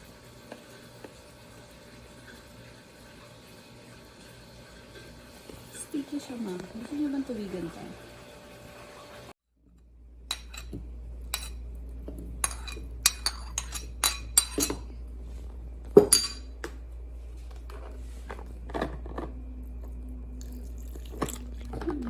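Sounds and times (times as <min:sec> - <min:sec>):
steady low hum: 0:09.7 - 0:22.0
utensils clinking against dishes: 0:10.3 - 0:11.6, 0:12.4 - 0:15.0, 0:16.0 - 0:16.6.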